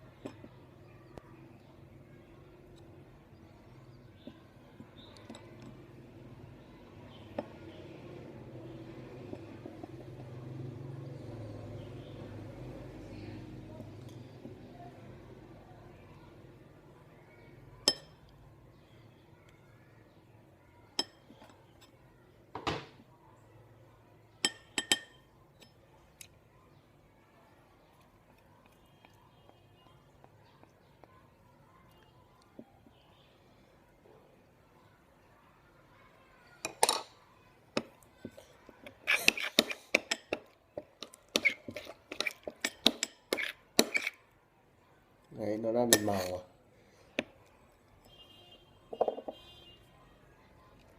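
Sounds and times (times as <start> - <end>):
utensil clinking against bowl: 24.4 - 25.8, 38.8 - 44.2, 45.9 - 46.4.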